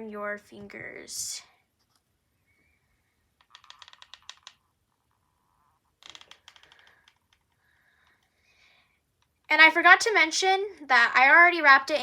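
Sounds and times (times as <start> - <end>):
small items clicking on tabletop: 3.4 - 4.7, 6.0 - 8.2.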